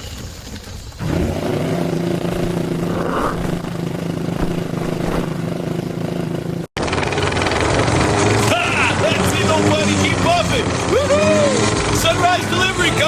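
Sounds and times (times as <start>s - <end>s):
snowmobile engine running: 1.0s - 6.7s.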